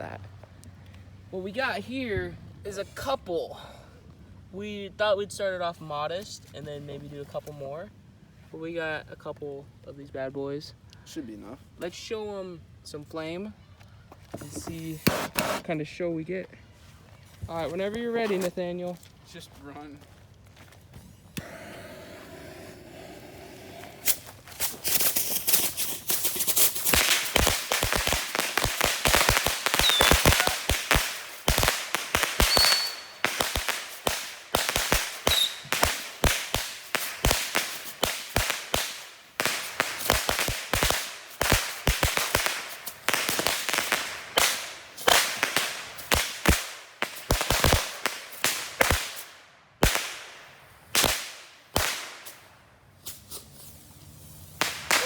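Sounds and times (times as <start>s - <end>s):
bottle rockets banging: 26.9s - 36.0s
rocket whistles: 29.7s - 30.8s, 32.3s - 33.4s, 35.2s - 35.8s.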